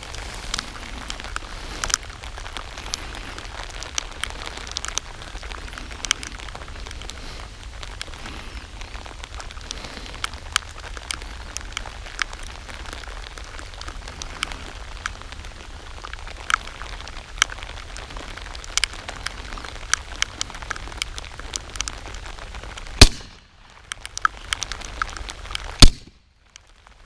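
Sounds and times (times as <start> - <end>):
patter of small clicks: 0.1 - 27.0
suppressed pistol shots: 23.0 - 23.4, 25.8 - 26.1.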